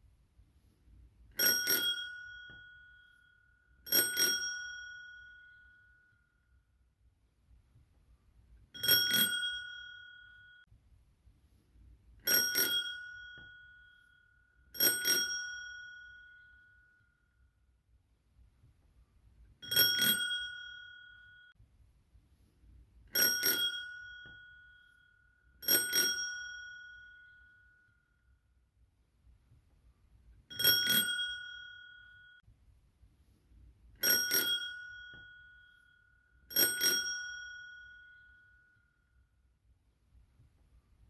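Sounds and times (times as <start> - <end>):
bicycle bell ringing: 1.4 - 6.1, 8.8 - 10.6, 12.3 - 14.2, 14.8 - 17.0, 19.6 - 21.5, 23.2 - 27.9, 30.5 - 32.4, 34.0 - 38.8.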